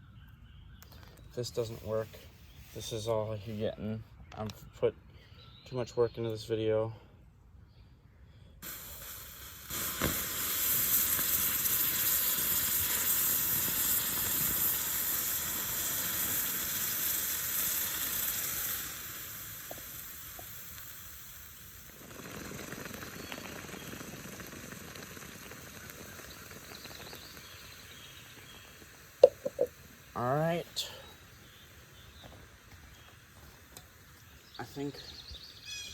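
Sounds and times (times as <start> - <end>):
molten metal hissing and sizzling: 8.6 - 35.5.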